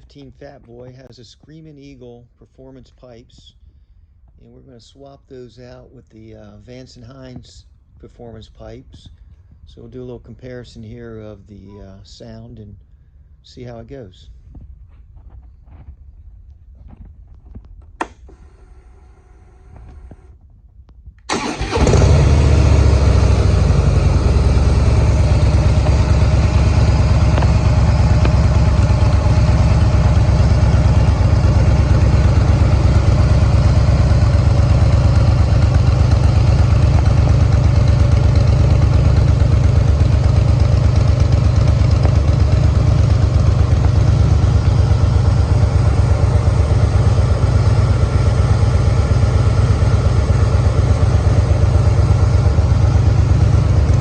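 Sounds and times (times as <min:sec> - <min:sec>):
motorcycle engine starting and idling: 0:21.3 - 0:54.0.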